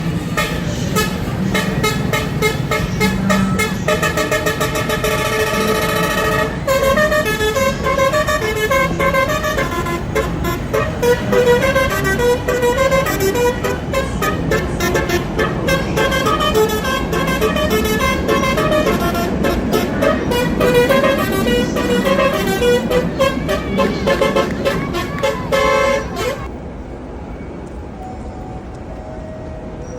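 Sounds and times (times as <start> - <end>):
train horn tooting: 0.0 - 26.5.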